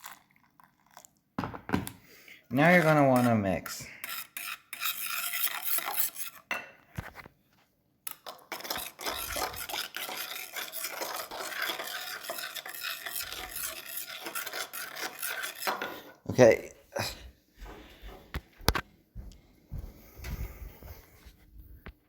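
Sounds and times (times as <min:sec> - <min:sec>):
utensil stirring eggs in bowl: 0:02.5 - 0:07.2, 0:08.1 - 0:16.6.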